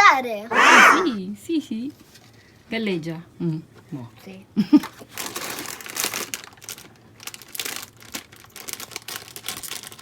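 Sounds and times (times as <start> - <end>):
plastic packaging crinkling: 5.2 - 10.0.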